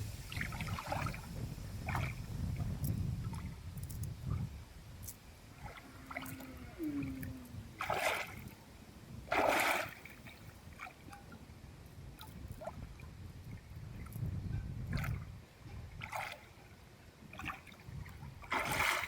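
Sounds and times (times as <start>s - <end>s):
steady low rumble: 0.0s - 9.3s
water splashing: 0.0s - 11.4s, 12.2s - 19.0s.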